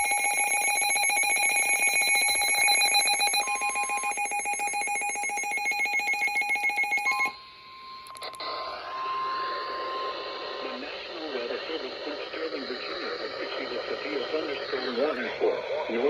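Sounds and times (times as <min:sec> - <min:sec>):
steady warning alarm tone: 0:00.0 - 0:11.8
rapid pulsing alarm beep: 0:00.0 - 0:16.0
clicks: 0:08.0 - 0:08.5.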